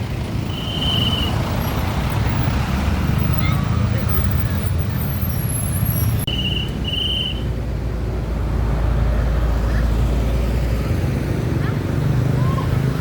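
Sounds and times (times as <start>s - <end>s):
heavy vehicle engine droning: 0.0s - 6.9s
roadside traffic: 0.0s - 13.0s.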